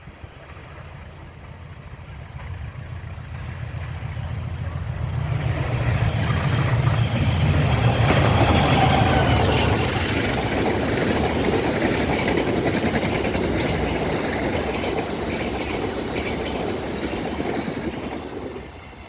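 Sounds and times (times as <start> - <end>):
train approaching: 0.0 - 19.0.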